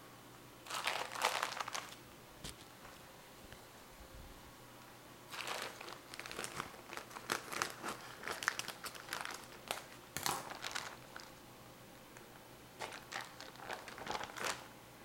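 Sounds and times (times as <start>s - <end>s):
packaging crinkling: 0.6s - 2.7s, 5.3s - 11.4s, 12.8s - 14.7s.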